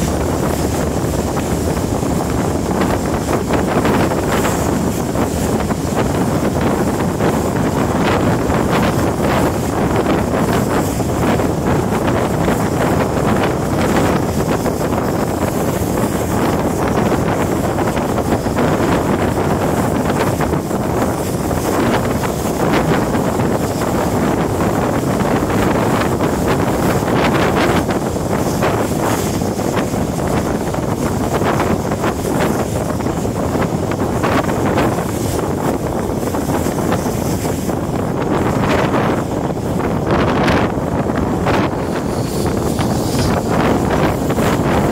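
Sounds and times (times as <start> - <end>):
train running noise: 0.0 - 44.9
wind buffeting microphone: 0.0 - 44.9.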